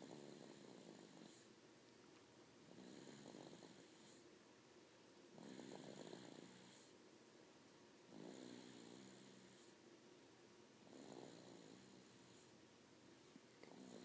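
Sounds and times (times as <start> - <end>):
snoring with fluttering rattle: 0.0 - 1.5, 2.6 - 4.2, 5.4 - 6.9, 8.1 - 9.8, 10.8 - 12.5, 13.6 - 14.0.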